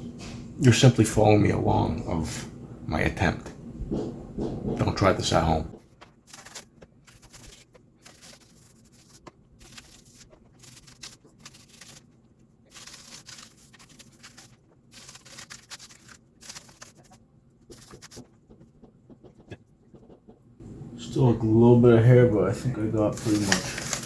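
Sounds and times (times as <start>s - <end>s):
toothbrush scrubbing a keyboard: 4.8s - 20.5s, 23.1s - 24.0s.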